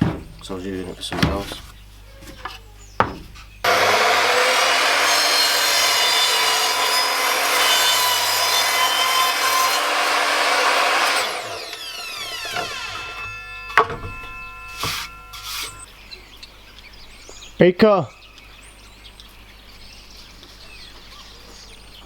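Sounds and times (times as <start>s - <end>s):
electric power tool running: 3.7s - 15.9s.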